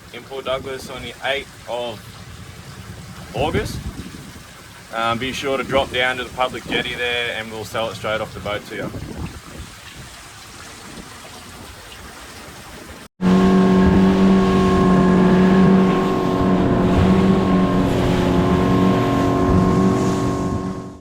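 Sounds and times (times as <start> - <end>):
outboard motor running: 0.0 - 8.5, 13.2 - 21.0
faint wind and water hiss: 0.0 - 20.8.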